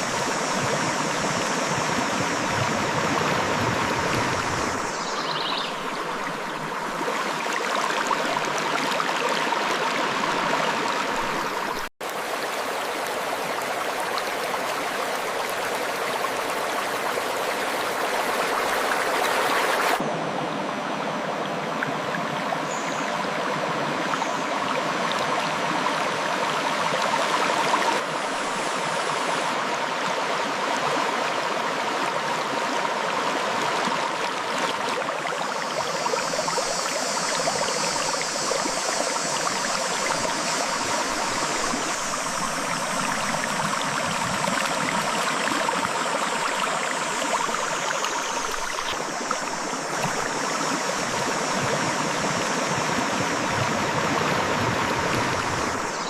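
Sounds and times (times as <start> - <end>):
river flowing over rocks: 5.8 - 20.0, 27.1 - 56.0
higher hiss: 35.5 - 53.5.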